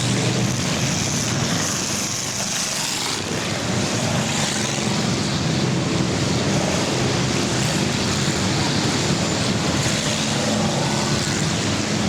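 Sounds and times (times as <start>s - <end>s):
racing car engines: 2.8s - 12.0s.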